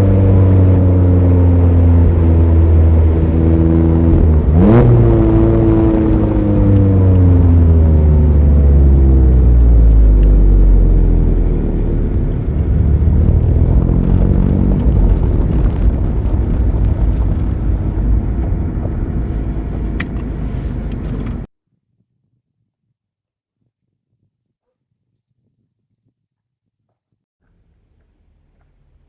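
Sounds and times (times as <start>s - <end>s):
car engine revving: 0.0s - 21.5s
road noise rumble: 0.0s - 21.5s.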